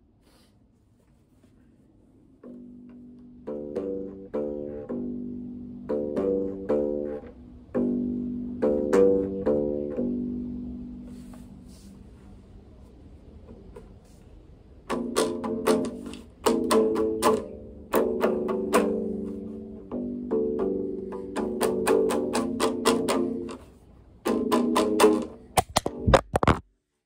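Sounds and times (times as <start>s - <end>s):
guitar chords strummed: 2.4s - 11.7s, 14.8s - 26.4s.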